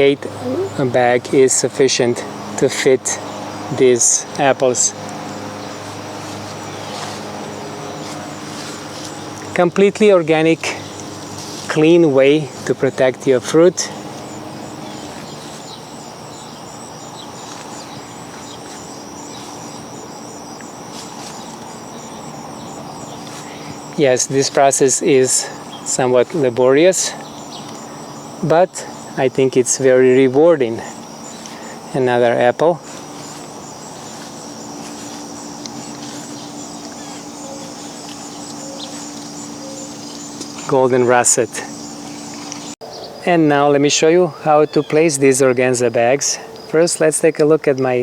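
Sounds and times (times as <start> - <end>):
low steady hum: 0.0 - 42.8
insects trilling: 0.0 - 48.0
faint bird chirps: 12.4 - 43.3.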